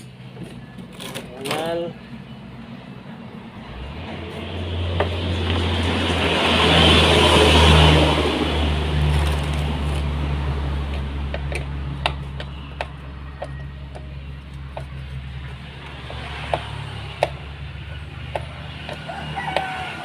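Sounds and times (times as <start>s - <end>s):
sharp clicks and ticks: 10.8s - 19.9s.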